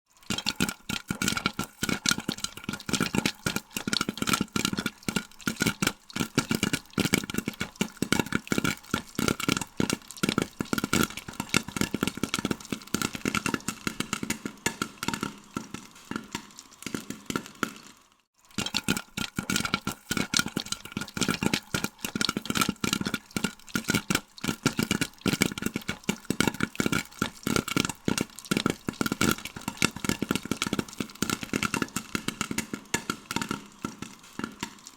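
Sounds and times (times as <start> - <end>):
popcorn popping: 0.1 - 34.9.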